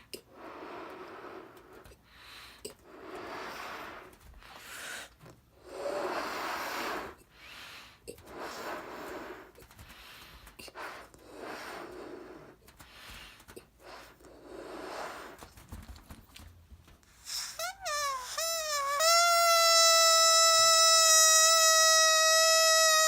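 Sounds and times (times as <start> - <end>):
balloon vibrating with rasping buzz: 17.1 - 23.0.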